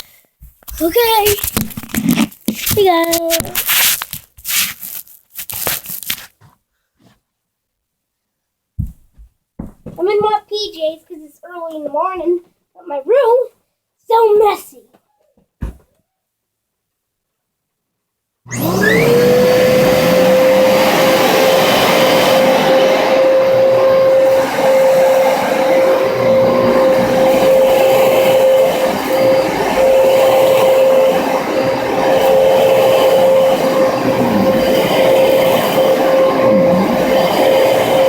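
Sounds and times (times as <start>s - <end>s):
vacuum cleaner motor whine: 18.5s - 38.0s
loud airflow noise: 18.7s - 38.0s.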